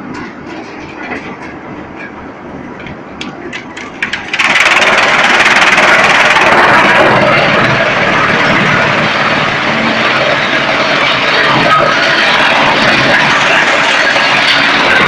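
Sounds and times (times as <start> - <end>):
wood knocking in machine: 3.6 - 15.0
wood chipper running: 3.8 - 15.0
loud steady chipping: 4.0 - 15.0.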